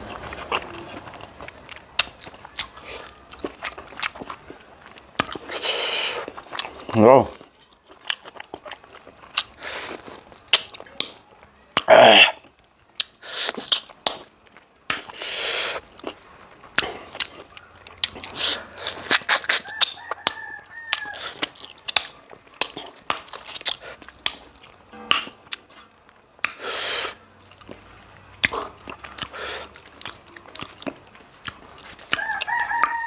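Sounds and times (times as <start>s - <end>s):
wet chewing and lip smacks: 2.0s - 11.2s, 13.0s - 24.8s, 25.5s - 33.0s
rooster crowing faintly: 19.4s - 21.8s, 32.1s - 33.0s.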